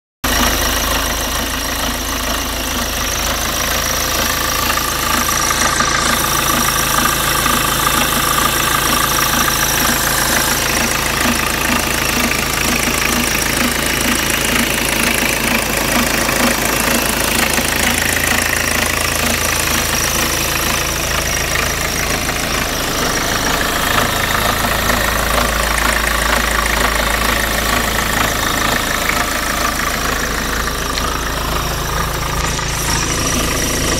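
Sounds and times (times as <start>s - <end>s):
diesel engine running: 0.2s - 33.9s
regular engine noise: 0.2s - 33.9s.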